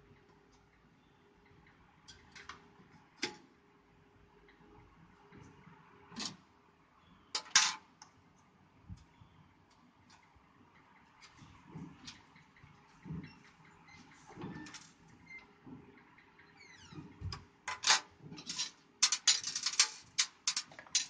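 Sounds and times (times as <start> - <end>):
computer parts clicking and clacking: 17.7 - 21.0.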